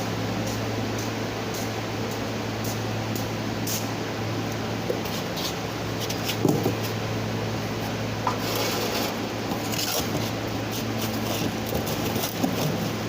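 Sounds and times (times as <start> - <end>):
steady mechanical hum: 0.0 - 13.0
rubbing or brushing: 8.4 - 13.0.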